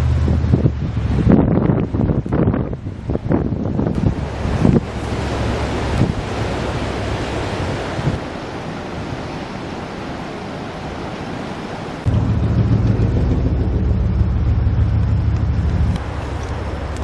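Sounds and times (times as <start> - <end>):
low rumble: 0.0 - 8.1, 12.0 - 17.0
wind rushing across microphone: 0.0 - 17.0.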